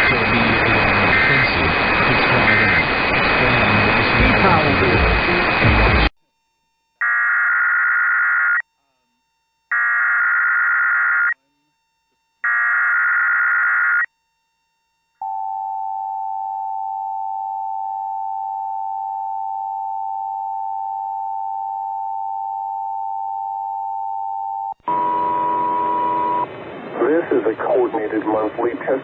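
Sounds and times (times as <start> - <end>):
harsh digital data screech: 1.0 - 6.0.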